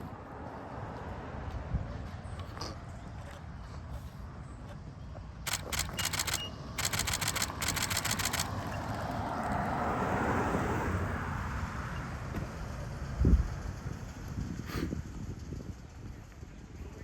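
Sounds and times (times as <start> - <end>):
rapid sharp clicks: 5.5 - 9.5
car passing: 5.5 - 12.0.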